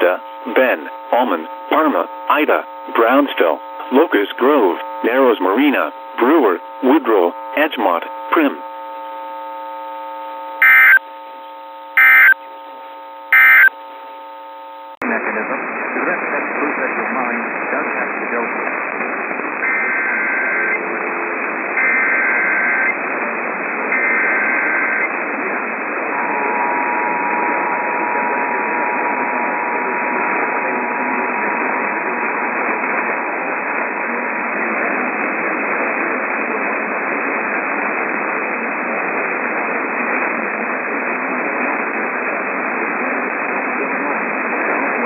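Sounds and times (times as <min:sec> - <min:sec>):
radio static: 0:00.0 - 0:45.0
two-tone attention signal: 0:10.6 - 0:11.1, 0:12.0 - 0:12.4, 0:13.3 - 0:13.8, 0:19.6 - 0:20.8, 0:21.8 - 0:22.9, 0:24.0 - 0:25.1.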